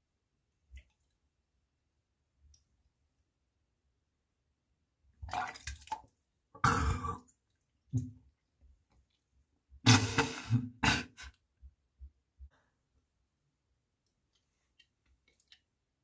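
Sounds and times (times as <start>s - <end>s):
person retching: 6.6s - 7.3s, 9.9s - 11.3s.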